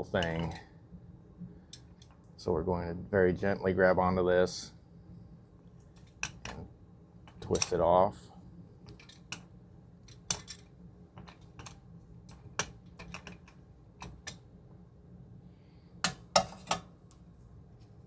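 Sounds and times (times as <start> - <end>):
pliers and metal parts clinking: 7.3 - 7.9.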